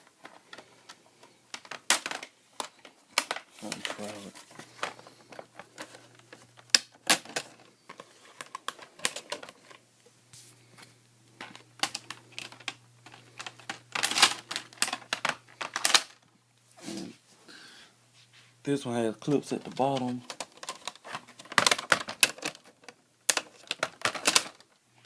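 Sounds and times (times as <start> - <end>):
plastic clips clicking and snapping: 19.6 - 24.7.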